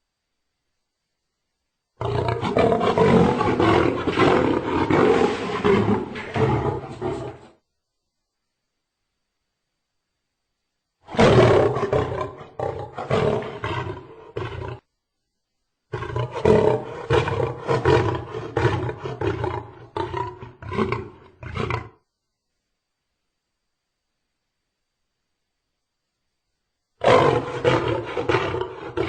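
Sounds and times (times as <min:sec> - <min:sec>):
lion roaring: 0:02.0 - 0:07.6, 0:11.1 - 0:14.8, 0:15.9 - 0:22.0, 0:27.0 - 0:29.0.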